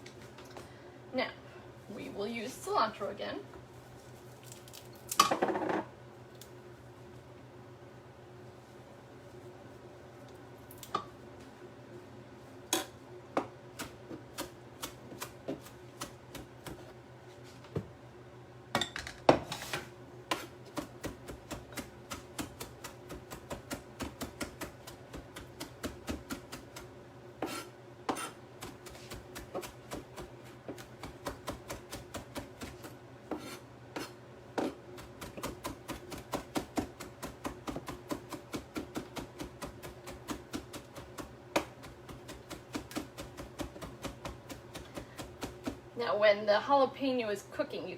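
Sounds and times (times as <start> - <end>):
knife chopping on cutting board: 19.3 - 45.8.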